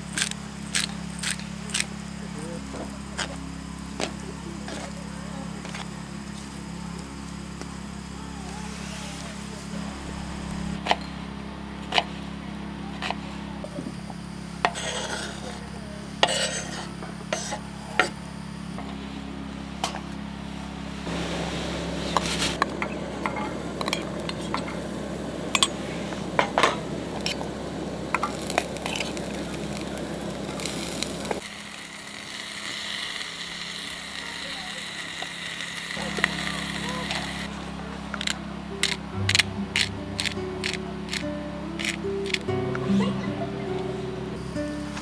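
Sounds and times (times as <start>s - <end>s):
food sizzling in pan: 14.0s - 18.7s, 21.0s - 39.0s
metal utensils clinking on cookware: 14.6s - 18.2s, 22.1s - 31.4s.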